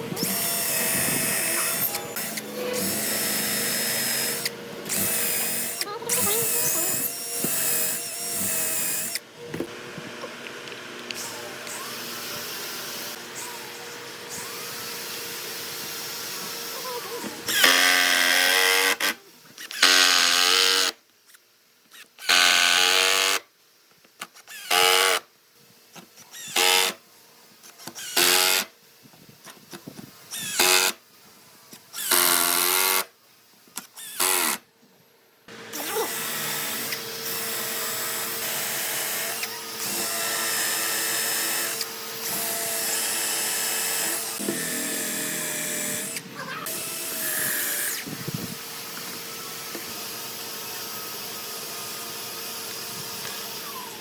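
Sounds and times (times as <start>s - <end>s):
power tool humming: 0.0s - 20.9s, 35.5s - 54.0s
electric drill whirring: 0.0s - 21.0s, 21.9s - 23.4s, 24.3s - 25.3s, 26.2s - 27.0s, 27.6s - 28.7s, 29.5s - 31.0s, 31.9s - 33.1s, 33.8s - 34.6s, 35.5s - 54.0s.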